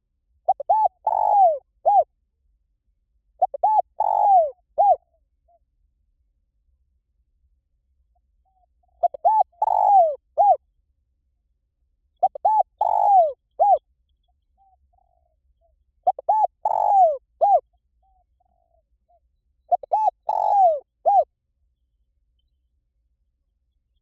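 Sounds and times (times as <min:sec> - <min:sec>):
dove cooing: 0:00.5 - 0:02.1, 0:03.4 - 0:05.0, 0:08.9 - 0:10.6, 0:12.2 - 0:13.8, 0:16.0 - 0:18.8, 0:19.7 - 0:21.3.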